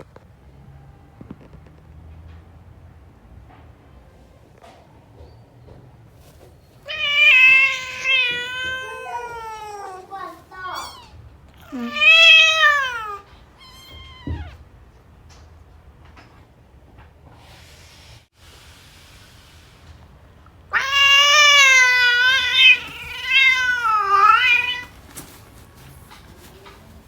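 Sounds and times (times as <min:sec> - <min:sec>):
cat meowing: 0:06.8 - 0:14.6, 0:20.7 - 0:25.0.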